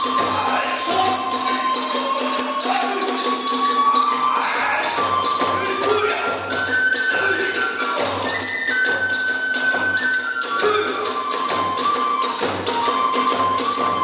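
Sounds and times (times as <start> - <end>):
bamboo flute long notes: 0.0 - 14.0.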